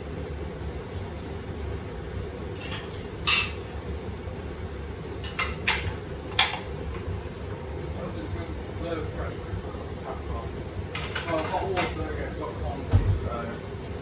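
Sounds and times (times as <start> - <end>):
steady low hum: 0.0 - 11.2, 11.8 - 14.0
crockery and cutlery clinking: 10.9 - 12.0.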